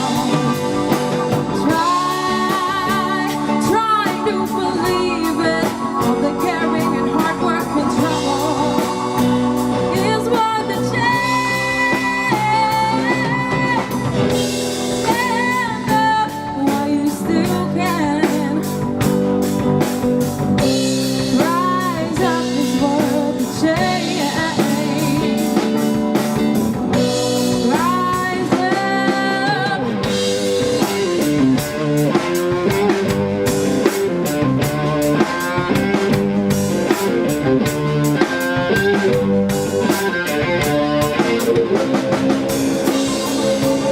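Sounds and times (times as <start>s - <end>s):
wavering lead melody: 0.0s - 16.5s
live rock band playing: 0.0s - 43.9s.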